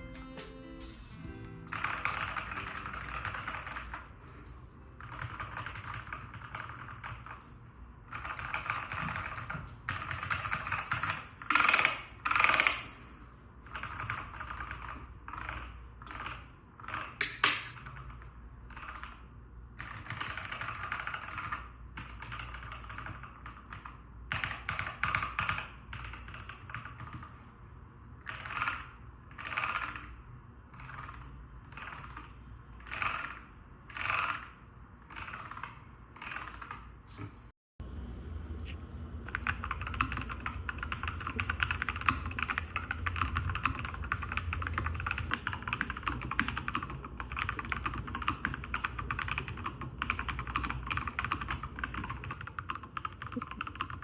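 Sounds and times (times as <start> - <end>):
mechanical keyboard typing: 1.7 - 4.2, 4.9 - 7.4, 8.1 - 13.0, 13.7 - 18.0, 19.8 - 27.3, 39.2 - 54.0.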